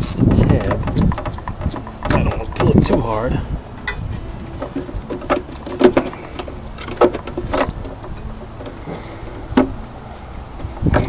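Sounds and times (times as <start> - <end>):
steady low hum: 0.0 - 11.0
plastic parts clicking and knocking: 0.3 - 9.8, 10.6 - 11.0.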